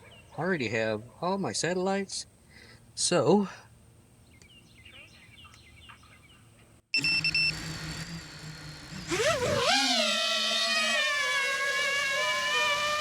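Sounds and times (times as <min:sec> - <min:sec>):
drone motors whining: 0:07.0 - 0:13.0.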